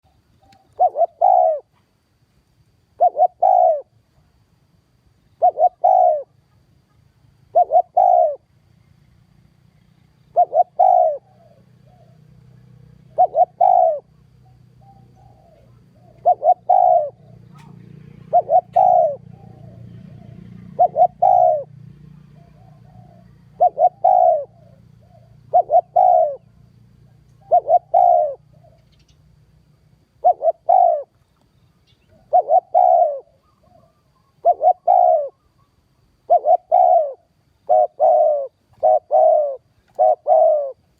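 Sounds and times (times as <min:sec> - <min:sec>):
dove cooing: 0:00.0 - 0:01.8, 0:02.9 - 0:04.0, 0:05.3 - 0:06.9, 0:07.5 - 0:08.5, 0:10.2 - 0:31.2, 0:31.9 - 0:40.9.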